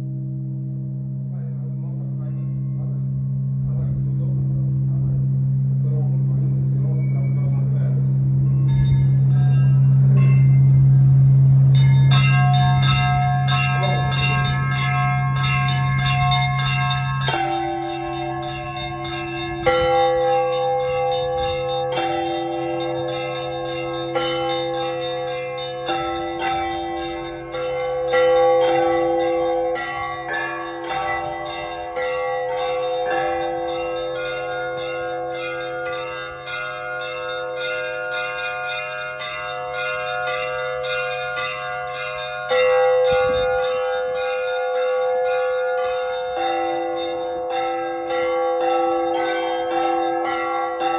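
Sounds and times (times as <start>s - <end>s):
deep bass bell humming: 0.0s - 50.9s
middle bells ringing: 0.0s - 50.9s
small high bells struck: 6.2s - 11.0s, 11.7s - 50.9s.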